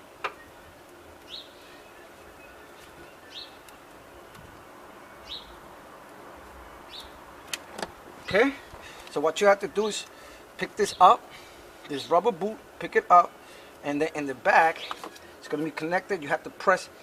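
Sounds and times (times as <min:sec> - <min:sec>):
faint background noise: 0:00.0 - 0:17.0
bird chirping: 0:00.2 - 0:05.6, 0:06.6 - 0:07.5, 0:14.7 - 0:15.1.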